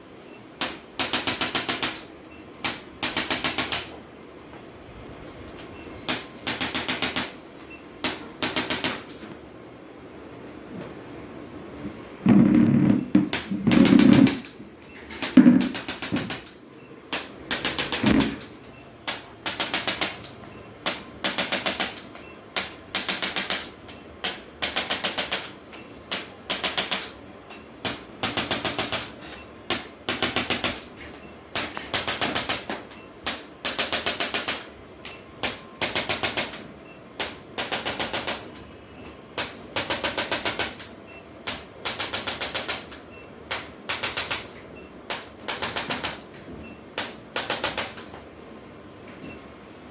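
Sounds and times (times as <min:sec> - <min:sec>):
rapid mechanical clicking: 0:00.6 - 0:04.0, 0:06.1 - 0:07.4, 0:15.1 - 0:30.9, 0:31.5 - 0:38.6, 0:39.4 - 0:46.3, 0:47.0 - 0:48.1.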